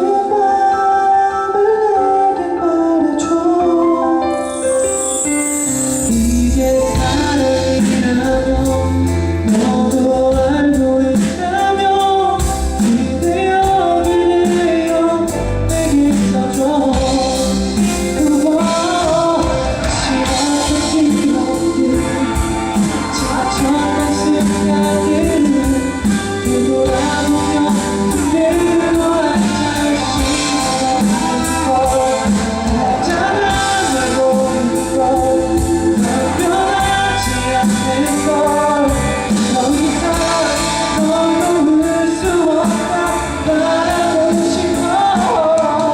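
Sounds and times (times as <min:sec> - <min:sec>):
bass: 0:00.0 - 0:45.9
keyboard: 0:00.0 - 0:45.9
person singing: 0:00.0 - 0:45.9
steady beat: 0:17.8 - 0:38.2.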